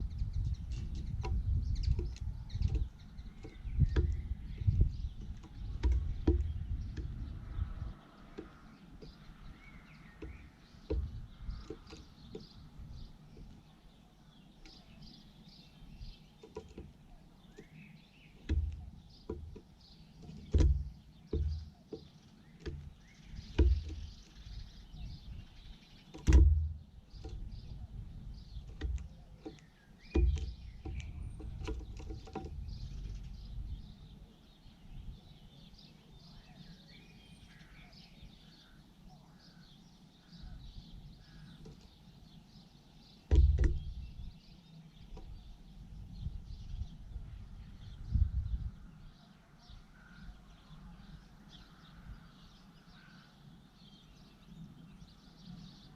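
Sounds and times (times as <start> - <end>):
low thumps and knocks: 0.0 - 13.6, 18.4 - 25.4, 26.1 - 33.8, 43.3 - 44.3
faint bird chirps: 0.0 - 55.9.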